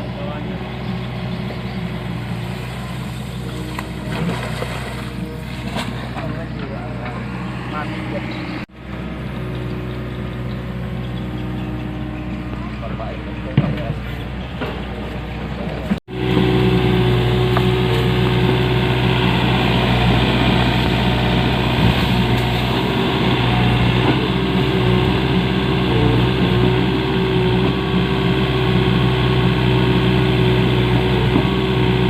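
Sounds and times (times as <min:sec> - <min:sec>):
excavator diesel engine running: 0:00.0 - 0:32.0.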